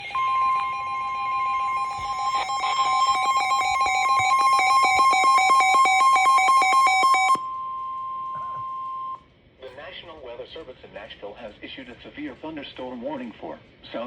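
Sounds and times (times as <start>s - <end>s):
emergency alert warning tones: 0.0s - 9.2s.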